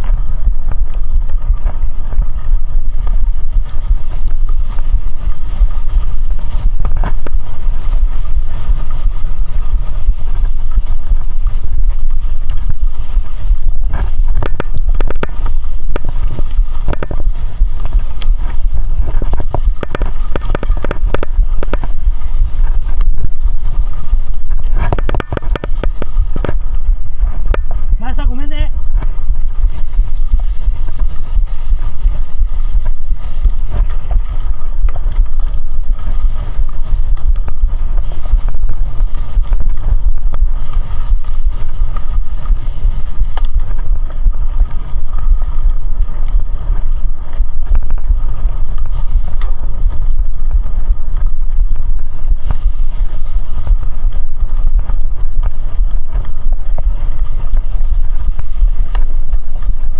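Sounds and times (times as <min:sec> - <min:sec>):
wind buffeting microphone: 0:00.0 - 0:59.9
light ticks: 0:12.0 - 0:26.6, 0:33.2 - 0:51.8.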